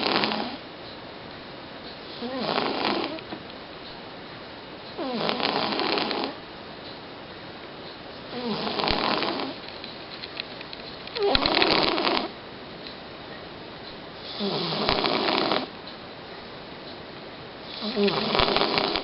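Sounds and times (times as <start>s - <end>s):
cat snoring loudly: 0.0s - 0.6s, 2.1s - 3.2s, 5.0s - 6.4s, 8.3s - 9.6s, 11.2s - 12.3s, 14.2s - 15.7s, 17.6s - 19.0s.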